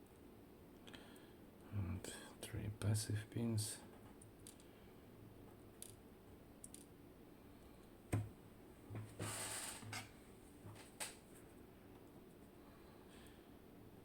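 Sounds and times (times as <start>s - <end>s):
small clicks of lock parts: 4.2s - 4.7s, 5.8s - 6.0s, 6.6s - 6.9s
short scrape: 9.2s - 9.9s.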